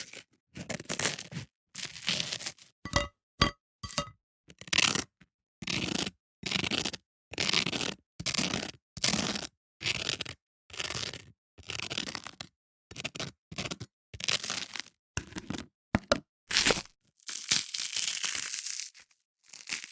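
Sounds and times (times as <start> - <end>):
toast crunching: 16.5 - 16.9.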